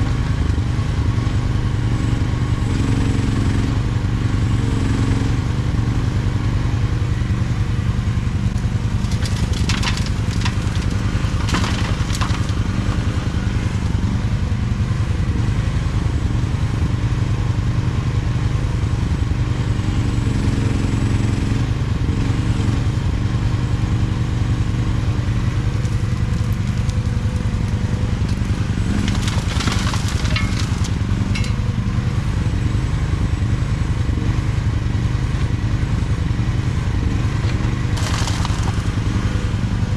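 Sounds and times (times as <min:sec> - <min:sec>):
excavator diesel engine running: 0:00.0 - 0:39.9
gravel crunching in bucket: 0:08.9 - 0:13.0, 0:25.8 - 0:31.8, 0:37.4 - 0:39.5.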